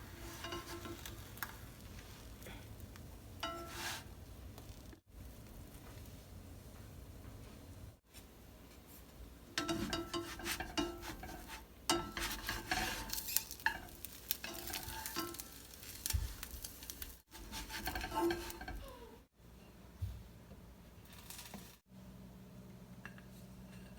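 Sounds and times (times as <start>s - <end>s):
metal utensil scraping a pan: 0.0s - 2.1s, 3.4s - 4.2s, 9.5s - 19.0s
food sizzling: 0.0s - 5.0s, 9.6s - 19.1s.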